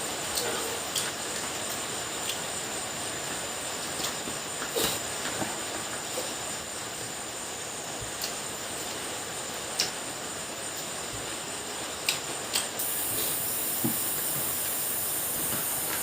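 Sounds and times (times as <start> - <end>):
steady background hiss: 0.0 - 16.0.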